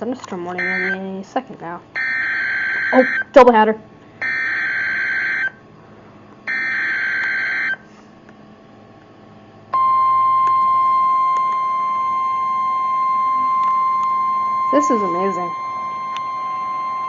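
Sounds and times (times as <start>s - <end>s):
screechy digital data bursts: 0.6s - 1.0s.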